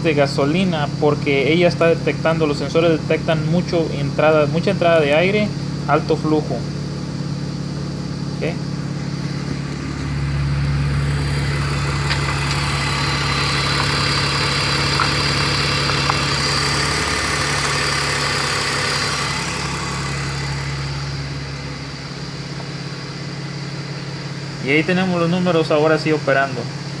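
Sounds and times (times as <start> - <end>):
car engine idling: 0.0 - 27.0
high hiss: 8.4 - 27.0.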